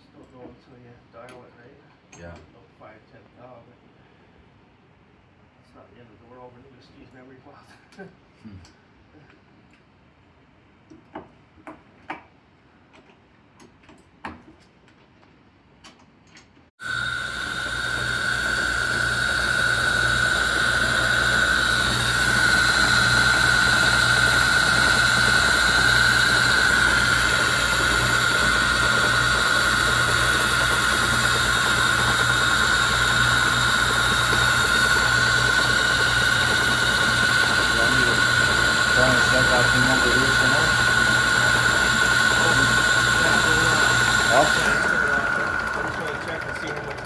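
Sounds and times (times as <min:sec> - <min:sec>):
metal lathe whine and hum: 0:16.8 - 0:47.0.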